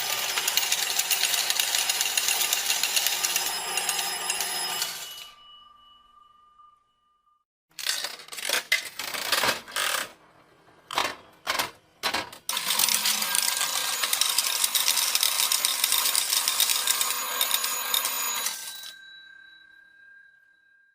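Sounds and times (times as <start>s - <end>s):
faint held tone: 3.9s - 7.5s, 18.6s - 20.9s
coins rattling down: 12.5s - 18.9s
slot machine jingling: 12.5s - 19.2s.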